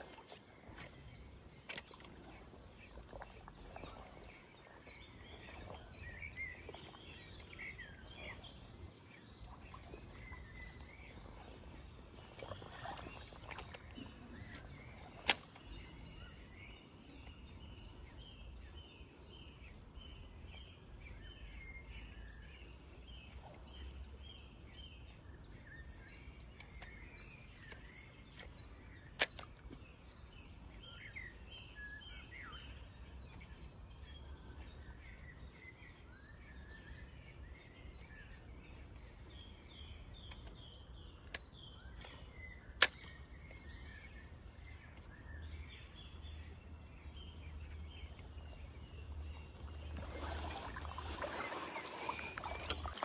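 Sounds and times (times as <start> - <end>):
sharp click: 0.0 - 2.1, 14.5 - 15.8, 27.7 - 29.8, 41.2 - 43.6
fishing reel ticking: 0.0 - 8.2, 9.7 - 15.8, 28.4 - 29.6, 38.7 - 43.2.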